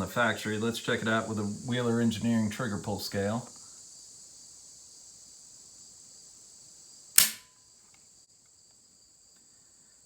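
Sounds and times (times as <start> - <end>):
crickets chirring: 0.0 - 10.0
trigger click: 7.2 - 7.5.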